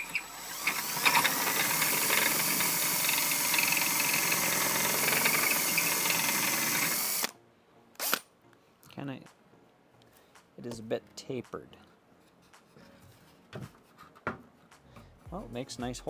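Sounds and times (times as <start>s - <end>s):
power drill cutting through metal: 0.0s - 7.3s, 8.0s - 8.2s.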